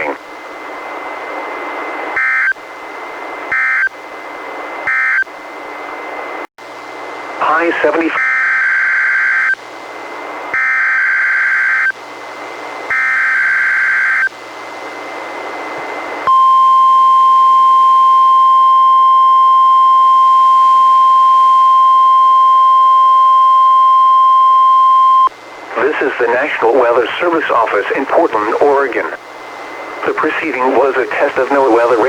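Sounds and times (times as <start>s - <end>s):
radio hiss: 0.0s - 0.3s, 7.4s - 8.2s, 25.3s - 32.0s
steady warning alarm tone: 2.2s - 2.6s, 3.5s - 4.0s, 4.8s - 5.3s, 8.2s - 9.6s, 10.5s - 12.0s, 12.9s - 14.3s, 16.3s - 25.3s.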